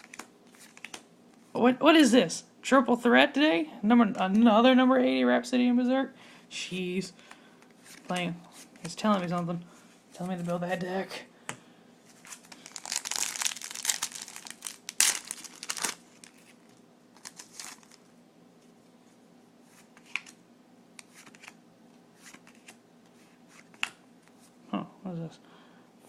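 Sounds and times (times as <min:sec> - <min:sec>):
foil wrapper crinkling and tearing: 0:12.2 - 0:18.1.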